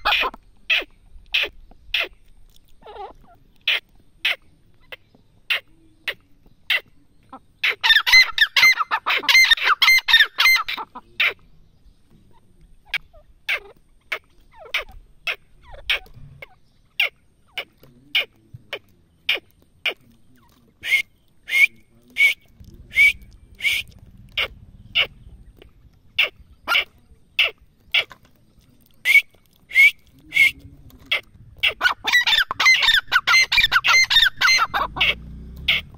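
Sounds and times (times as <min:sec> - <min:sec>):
francolin calling: 0:12.4 - 0:35.9.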